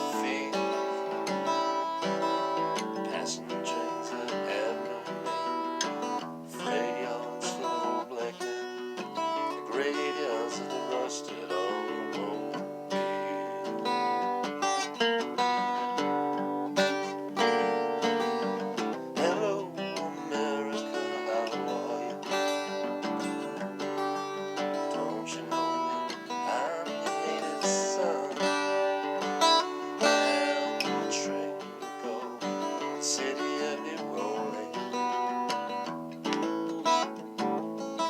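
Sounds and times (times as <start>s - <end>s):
acoustic guitar strummed and picked: 0.0s - 38.0s.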